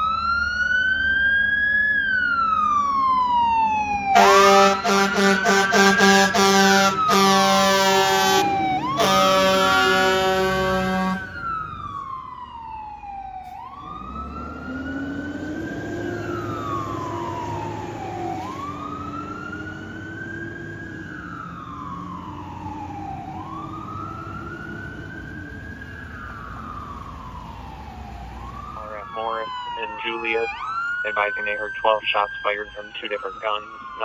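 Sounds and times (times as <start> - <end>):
siren wailing: 0.0 - 34.0
truck engine hum: 0.0 - 34.0
air horn blast: 4.2 - 11.4.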